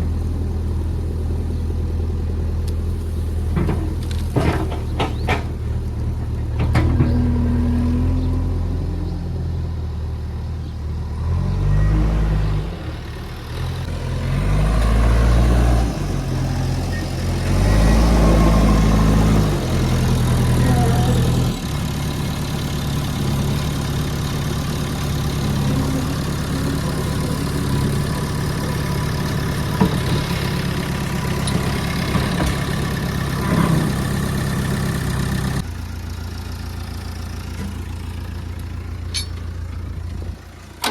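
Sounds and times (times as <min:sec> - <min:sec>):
heavy diesel engine revving: 0:06.0 - 0:09.9, 0:11.0 - 0:39.0.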